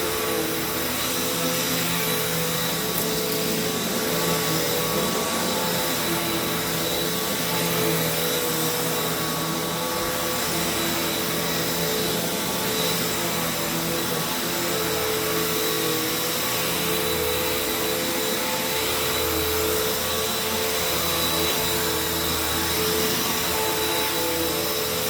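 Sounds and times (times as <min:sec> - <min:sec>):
vacuum cleaner running: 0:00.0 - 0:25.0.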